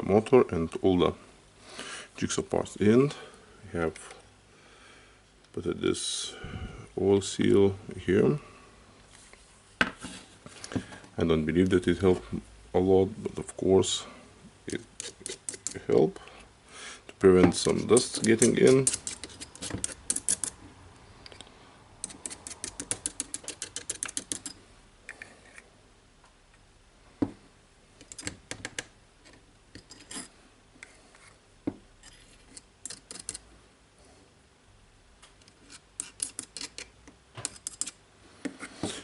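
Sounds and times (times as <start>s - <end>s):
jigsaw parts clicking: 22.0s - 24.5s.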